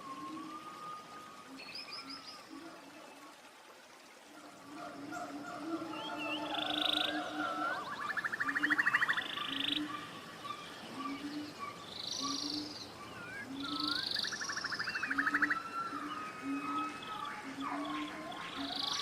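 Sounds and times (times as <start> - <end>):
buzzy bird trills: 5.0 - 19.0.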